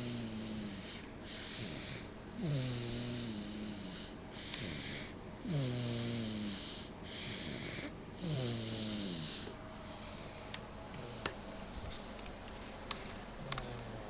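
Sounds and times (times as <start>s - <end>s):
soft breathing: 0.0s - 5.6s, 6.4s - 8.3s, 8.9s - 14.0s
baby snoring: 0.0s - 9.6s.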